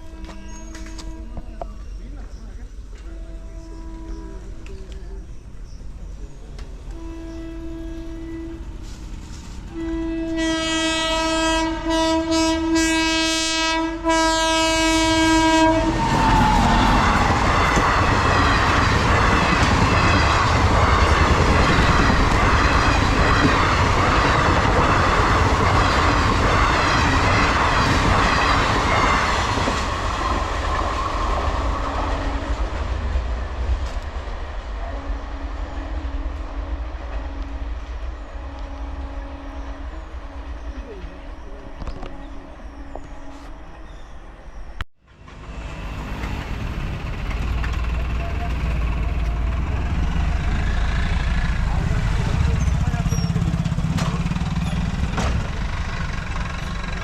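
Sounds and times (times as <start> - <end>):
train horn: 0.0 - 1.7, 3.0 - 4.9, 6.9 - 33.1, 34.8 - 44.3
train passing at speed: 0.0 - 57.0.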